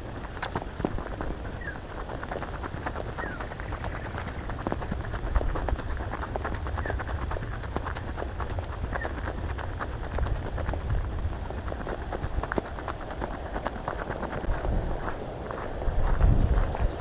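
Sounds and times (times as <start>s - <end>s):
crunching footsteps on dirt: 0.0s - 17.0s.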